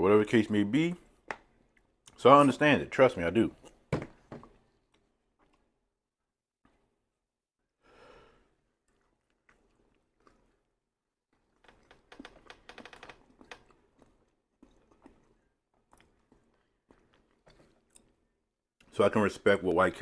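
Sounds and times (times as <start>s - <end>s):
person chewing food: 4.5s - 5.8s, 8.5s - 18.4s.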